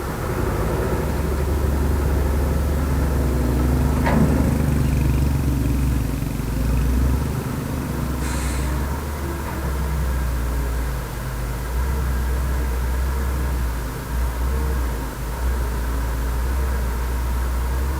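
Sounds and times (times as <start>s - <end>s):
heavy diesel engine running: 0.0s - 17.9s
brief hiss: 8.2s - 9.0s.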